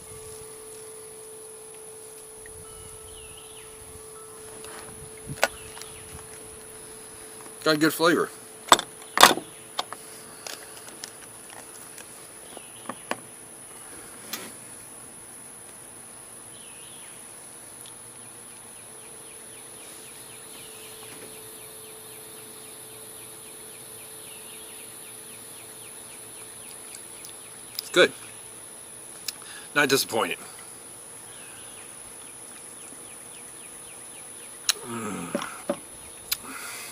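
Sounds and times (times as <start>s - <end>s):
pulsing chirp trill: 0.0s - 9.8s, 18.8s - 29.0s
insects droning: 0.0s - 36.9s.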